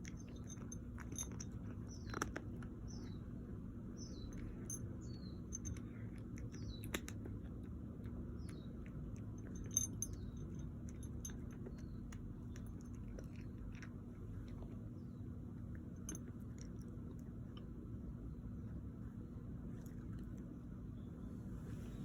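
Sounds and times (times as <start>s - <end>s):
small animal chewing: 0.0s - 3.5s, 4.2s - 17.8s
steady low hum: 0.0s - 22.0s.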